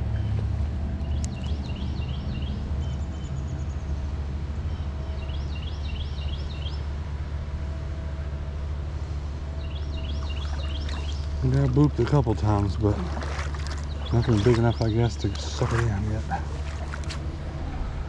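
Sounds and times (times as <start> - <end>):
songbird singing: 0.0 - 7.0, 9.4 - 17.6
low outdoor rumble: 0.0 - 18.0.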